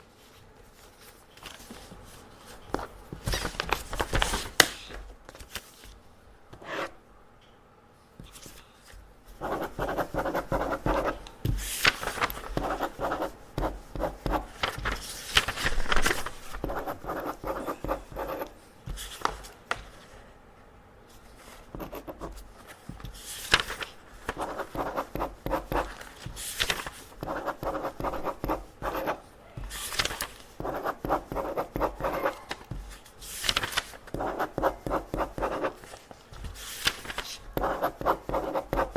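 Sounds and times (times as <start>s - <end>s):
pen scratching on paper: 9.4s - 14.6s, 16.1s - 18.6s, 21.7s - 22.4s, 24.3s - 32.9s, 34.1s - 35.9s, 37.6s - 38.9s.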